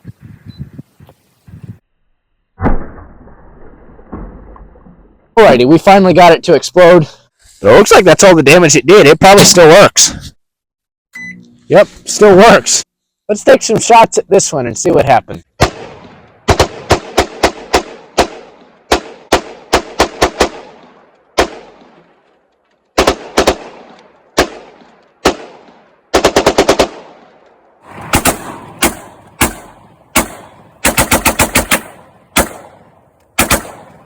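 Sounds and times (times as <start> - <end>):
gunshots: 15.6 - 22.1, 23.0 - 34.0.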